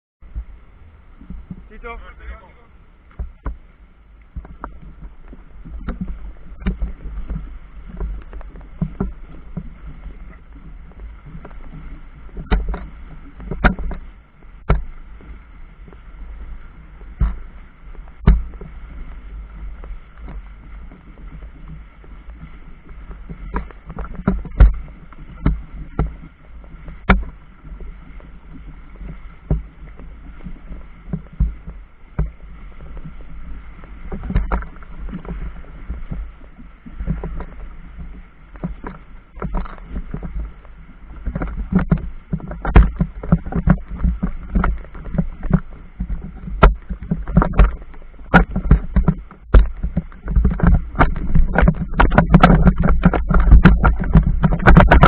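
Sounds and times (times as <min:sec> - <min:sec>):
low rumble: 0:00.2 - 0:55.0
river water slapping: 0:00.2 - 0:55.0.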